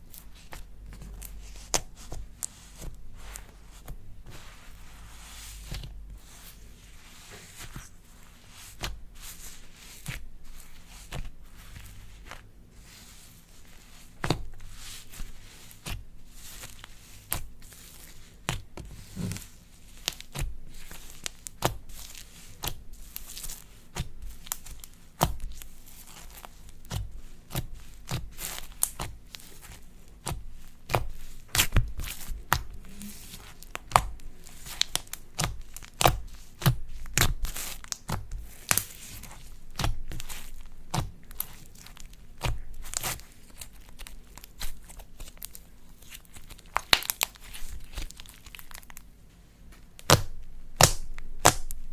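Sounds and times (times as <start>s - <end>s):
slime popping and crackling: 20.0s - 49.0s, 50.0s - 51.9s.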